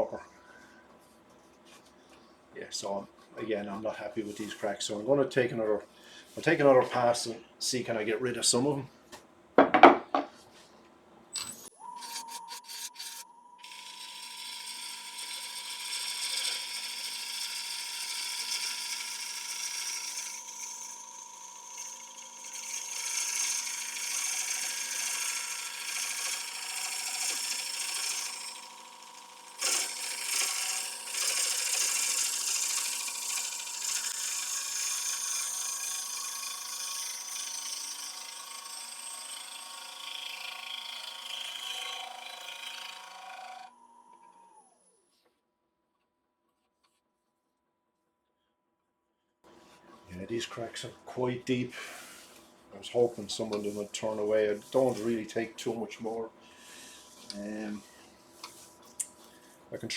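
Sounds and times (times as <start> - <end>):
lathe whine: 11.4 - 45.0
gouge cutting wood on a lathe: 12.0 - 43.7, 53.4 - 55.8.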